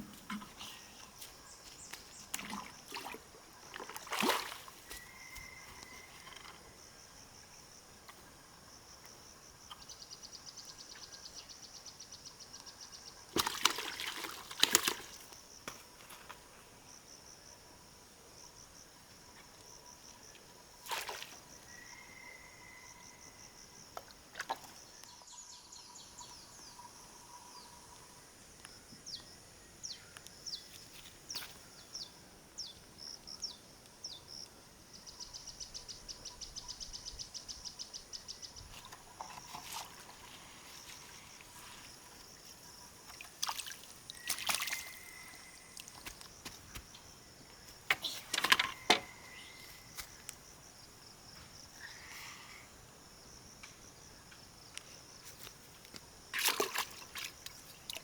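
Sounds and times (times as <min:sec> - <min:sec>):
short knocks or splashes: 0:02.3 - 0:04.8, 0:13.4 - 0:15.2, 0:56.3 - 0:58.0
wildlife chirping: 0:04.4 - 0:07.3, 0:21.4 - 0:23.8, 0:31.7 - 0:43.2, 0:43.9 - 0:46.0, 0:47.0 - 0:50.9.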